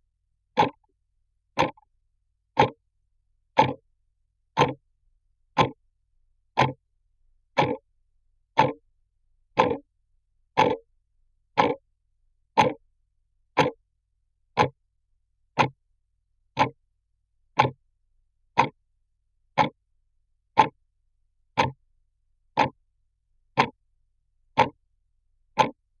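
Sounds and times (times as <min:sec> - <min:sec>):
clock ticking: 0:00.6 - 0:00.9, 0:01.6 - 0:01.9, 0:02.6 - 0:02.8, 0:03.6 - 0:03.8, 0:04.6 - 0:04.8, 0:05.6 - 0:05.8, 0:06.6 - 0:06.8, 0:07.6 - 0:07.8, 0:08.6 - 0:08.8, 0:09.6 - 0:09.9, 0:10.6 - 0:10.8, 0:11.6 - 0:11.8, 0:12.6 - 0:12.8, 0:13.6 - 0:13.8, 0:14.6 - 0:14.8, 0:15.6 - 0:15.8, 0:16.6 - 0:16.8, 0:17.6 - 0:17.8, 0:18.6 - 0:18.8, 0:19.6 - 0:19.8, 0:20.6 - 0:20.8, 0:21.6 - 0:21.8, 0:22.6 - 0:22.8, 0:23.6 - 0:23.8, 0:24.6 - 0:24.8, 0:25.6 - 0:25.8.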